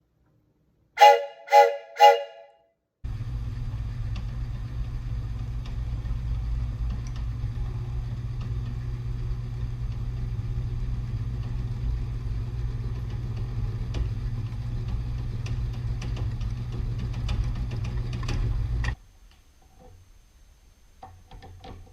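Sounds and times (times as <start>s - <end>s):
train whistle chord blasts: 1.0s - 2.6s.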